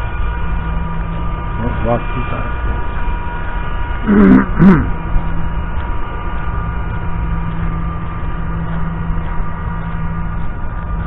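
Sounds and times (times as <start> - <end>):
low mechanical hum: 0.0 - 11.0
low rumble: 0.0 - 11.0
short voice sounds: 4.1 - 5.0.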